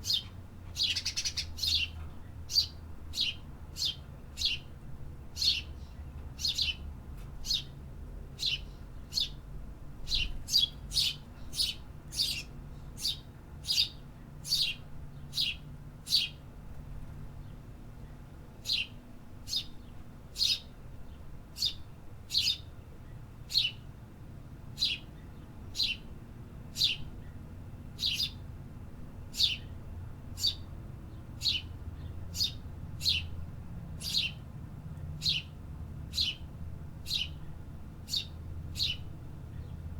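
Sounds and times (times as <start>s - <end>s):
bird chirping: 0.0s - 4.7s, 5.4s - 6.8s, 7.4s - 7.7s, 8.4s - 9.4s, 10.1s - 16.4s, 18.6s - 22.7s, 23.5s - 23.8s, 24.8s - 26.1s, 26.8s - 27.4s, 28.0s - 28.4s, 29.3s - 29.8s, 30.4s - 33.4s, 34.0s - 34.4s, 35.2s - 35.5s, 36.1s - 39.9s
low steady rumble: 0.0s - 39.9s.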